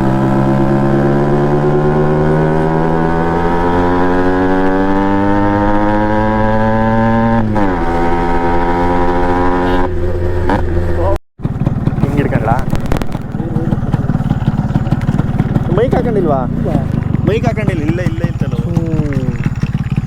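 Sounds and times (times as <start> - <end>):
two-stroke motorcycle engine running: 0.0 - 20.0.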